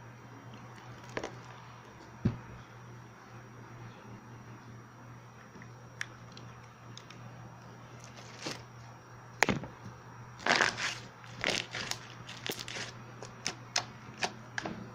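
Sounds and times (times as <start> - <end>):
slime popping and crackling: 10.4 - 12.9.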